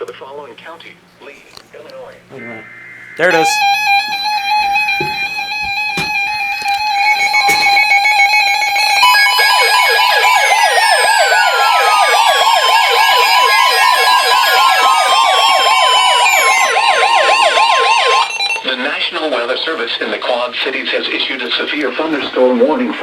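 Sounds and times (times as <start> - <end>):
steady electronic tones: 2.2 - 19.6
siren-like warbling tone: 2.3 - 19.1.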